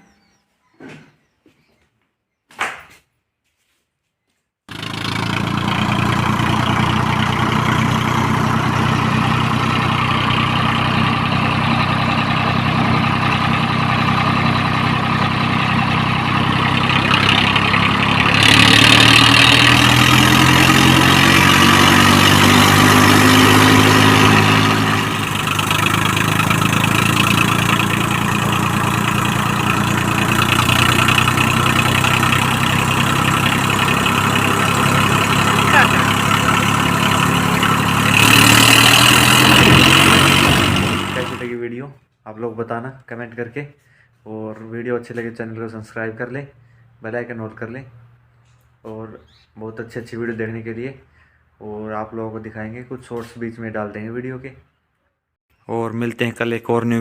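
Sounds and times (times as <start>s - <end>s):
diesel tractor engine idling and revving: 4.7s - 41.6s.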